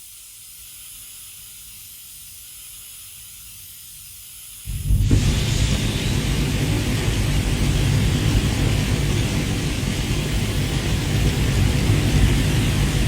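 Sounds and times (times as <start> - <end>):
flamethrower hissing: 0.0 - 13.0
flamethrower blast: 4.7 - 13.0.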